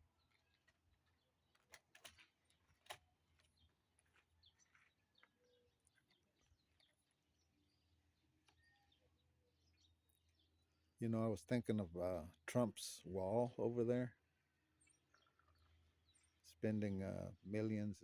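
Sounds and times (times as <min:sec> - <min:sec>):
faint bird chirps: 0:04.4 - 0:11.0.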